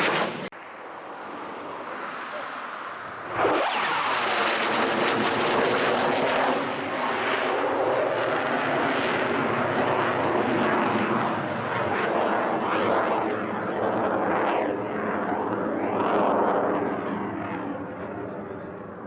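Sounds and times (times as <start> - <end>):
jet engine flyby roar: 0.0 - 19.0.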